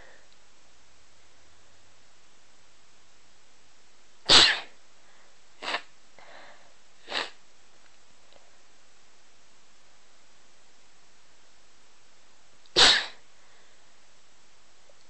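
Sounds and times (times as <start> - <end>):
person sneezing: 4.3 - 4.8, 5.6 - 5.9, 7.0 - 7.4, 12.7 - 13.2.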